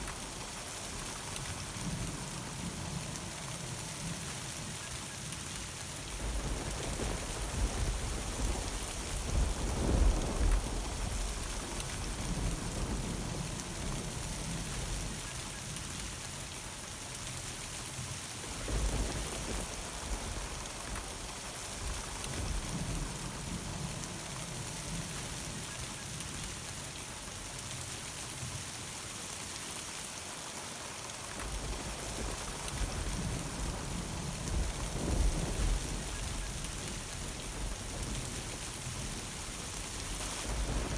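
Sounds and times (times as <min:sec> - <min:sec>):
heavy rain hissing: 0:00.0 - 0:40.9
thunder rumbling: 0:06.1 - 0:15.1, 0:31.5 - 0:40.9.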